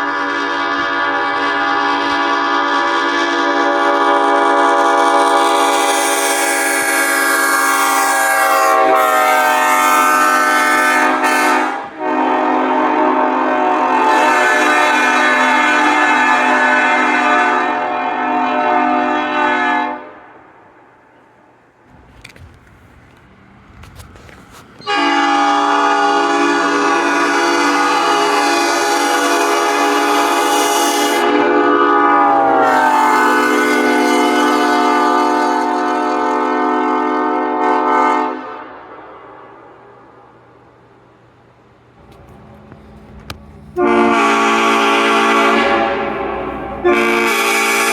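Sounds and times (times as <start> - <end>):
train air horn chord: 0.0 - 20.6, 24.8 - 39.7, 42.1 - 47.9
clicks: 42.0 - 43.8.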